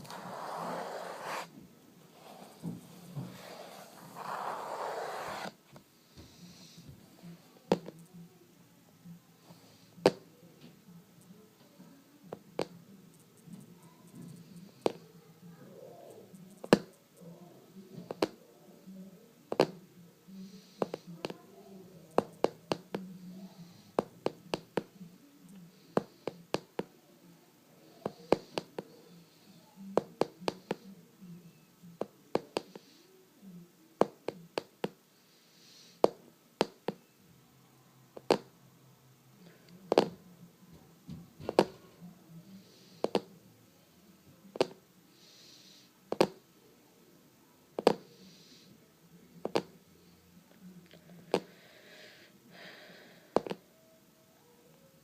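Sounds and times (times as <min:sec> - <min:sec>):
soft low murmur: 0:00.0 - 0:55.0
hands tapping and clicking: 0:46.1 - 0:46.4, 0:49.4 - 0:49.7, 0:53.4 - 0:53.6.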